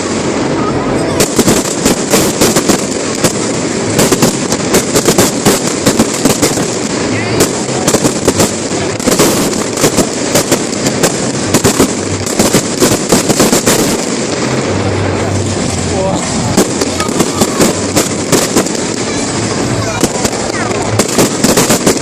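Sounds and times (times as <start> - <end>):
crowd voices: 0.0 - 22.0
fireworks bangs and crackles: 0.0 - 22.0.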